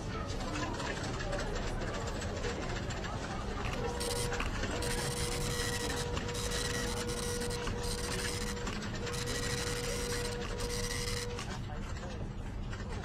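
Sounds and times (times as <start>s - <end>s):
printer running: 0.2s - 13.0s.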